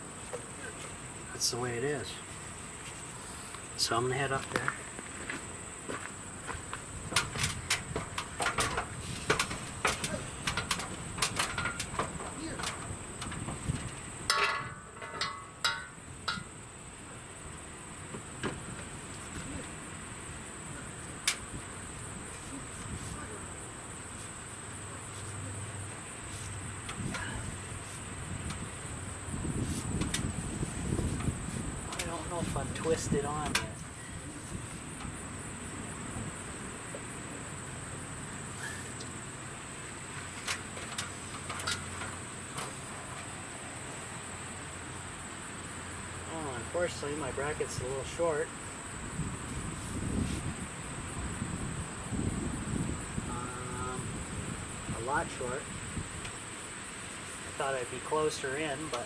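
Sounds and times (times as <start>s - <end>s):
high insect drone: 0.0s - 59.0s
light knocks and clinks: 7.1s - 16.5s
insect trilling: 52.0s - 55.3s.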